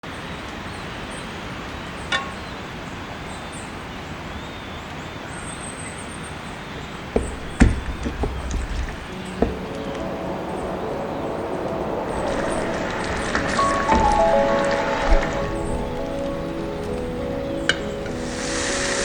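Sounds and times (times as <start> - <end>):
traffic ambience: 0.0 - 19.0
knocks: 7.1 - 9.9.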